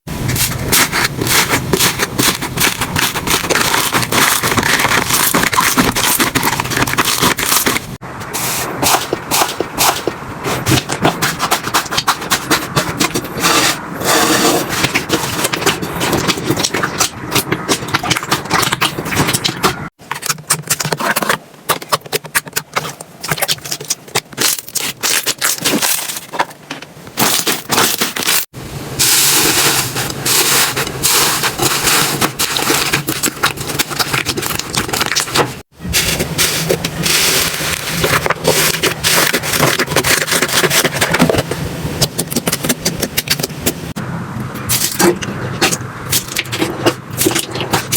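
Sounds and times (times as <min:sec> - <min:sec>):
slime crackling and popping: 0:00.3 - 0:08.0.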